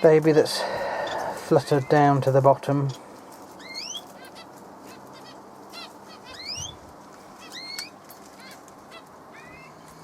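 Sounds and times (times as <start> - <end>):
bird whistling calls: 3.6 - 4.1, 6.2 - 6.8
bird chirps: 3.6 - 4.5, 5.1 - 6.8, 7.4 - 9.8.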